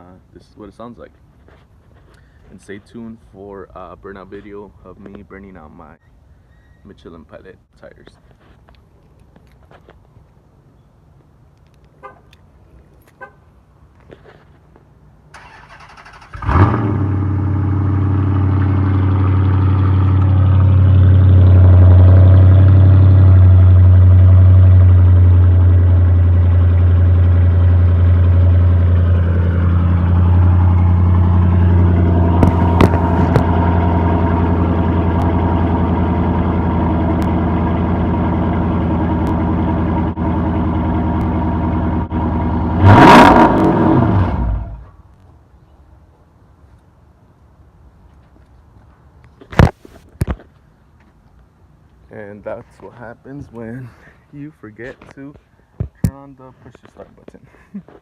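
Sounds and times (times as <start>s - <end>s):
car engine idling: 16.3s - 44.8s.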